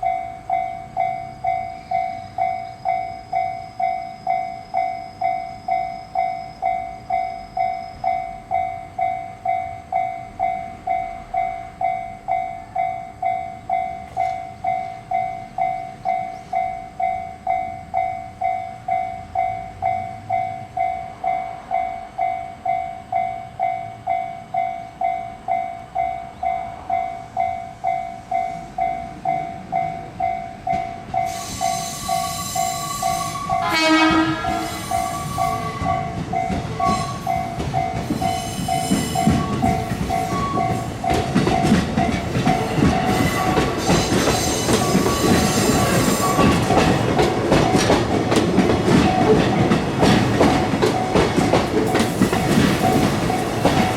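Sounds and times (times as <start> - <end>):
railroad crossing bell ringing: 0.0 - 53.9
train horn blast: 31.8 - 35.9.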